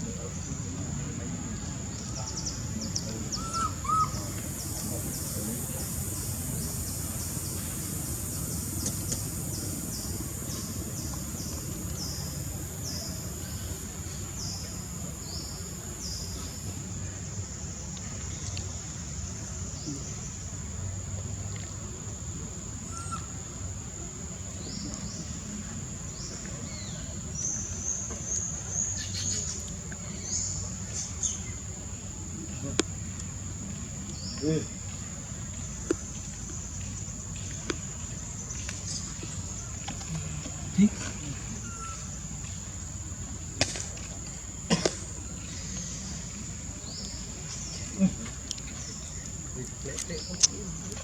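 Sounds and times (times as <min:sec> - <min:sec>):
insects buzzing in pulses: 0:00.0 - 0:17.1
insect drone: 0:00.0 - 0:51.0
steady high hiss: 0:00.0 - 0:51.0
high animal calls: 0:03.2 - 0:07.0.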